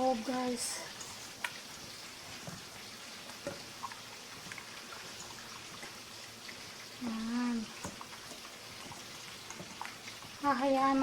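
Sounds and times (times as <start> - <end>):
food frying in hot oil: 0.0 - 11.0.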